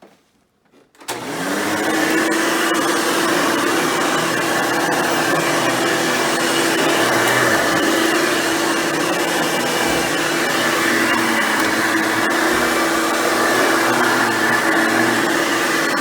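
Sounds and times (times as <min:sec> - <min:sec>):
vacuum cleaner motor humming: 0:01.1 - 0:16.0.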